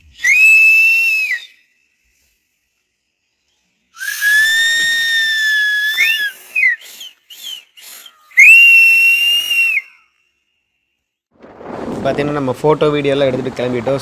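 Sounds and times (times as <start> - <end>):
person whistling: 0.0 - 1.8, 4.0 - 10.2.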